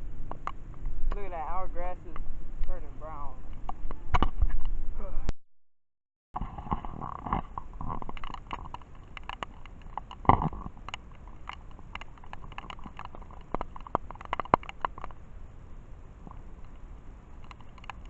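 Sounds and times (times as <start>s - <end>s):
raindrops tapping on camera: 6.5s - 15.2s, 17.4s - 18.0s
steady rain hiss: 6.5s - 18.0s.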